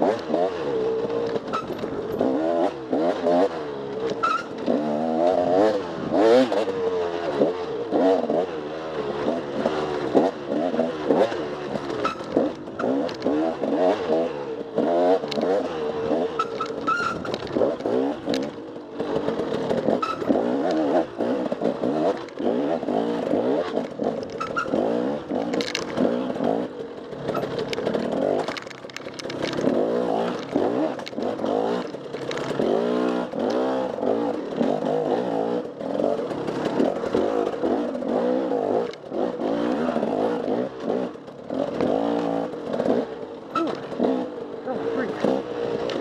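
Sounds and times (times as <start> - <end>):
dirt bike engine revving: 0.0 - 46.0
sharp clatters and knocks: 15.2 - 35.0, 35.6 - 46.0.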